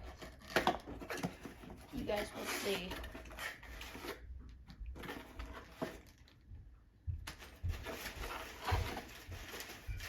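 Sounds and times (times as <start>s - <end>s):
packaging rustling: 7.3s - 10.0s.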